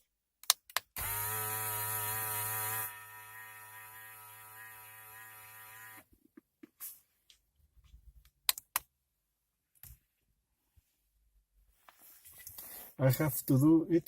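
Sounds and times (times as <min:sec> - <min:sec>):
steady buzzing tone from speakers: 0:01.0 - 0:06.0.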